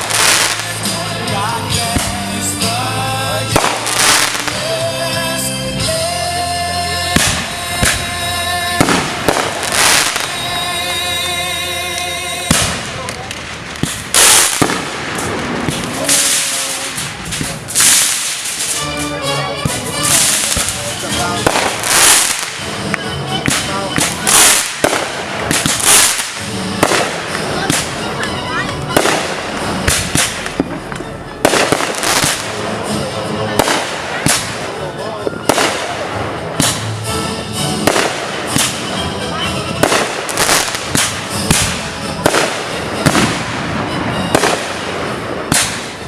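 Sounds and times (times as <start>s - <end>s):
firework bangs: 0.0s - 4.8s, 7.0s - 11.1s, 12.0s - 46.0s
hissing crackling firework bursts: 12.5s - 18.9s, 19.7s - 28.2s.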